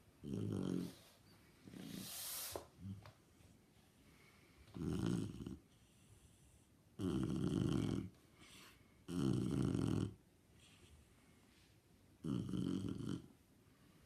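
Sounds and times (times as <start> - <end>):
dog snoring: 0.2 - 1.0, 4.7 - 10.2, 12.2 - 13.3
faint breath: 8.3 - 9.0.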